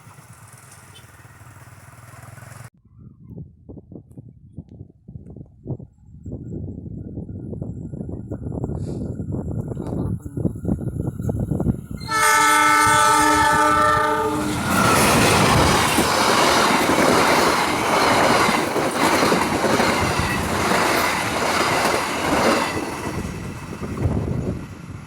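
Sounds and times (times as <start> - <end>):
locomotive air horn: 12.0 - 14.9
train wheels clattering on rails: 14.4 - 25.0.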